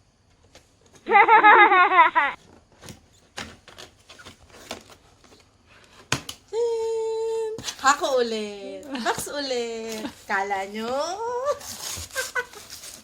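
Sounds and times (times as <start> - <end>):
cardboard packaging clicks and taps: 6.1 - 6.4.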